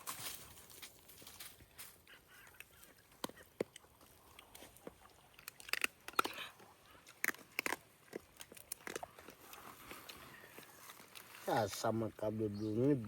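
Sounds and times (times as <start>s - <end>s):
bones being crunched: 2.6s - 11.6s.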